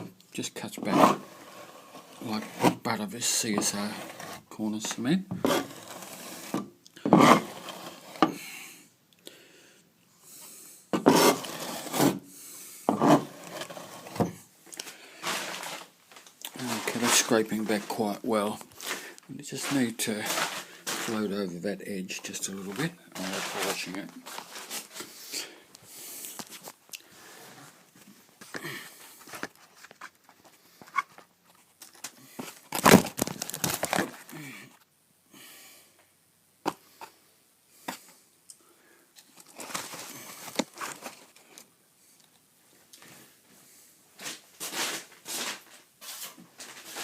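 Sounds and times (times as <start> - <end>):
scraper blade rasping plaster: 0.8 - 4.5, 5.4 - 8.3, 11.0 - 12.2, 12.9 - 14.2.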